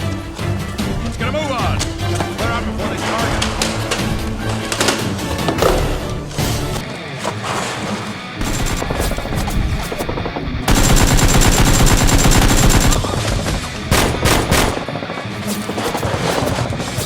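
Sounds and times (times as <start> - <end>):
background music: 0.0 - 17.0
automatic gunfire: 8.4 - 16.8.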